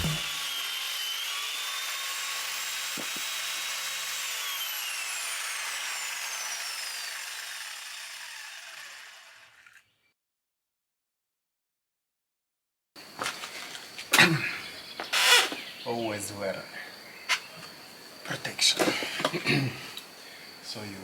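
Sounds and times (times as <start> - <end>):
short knock: 0.0 - 0.3
power grinder whining: 0.0 - 9.9.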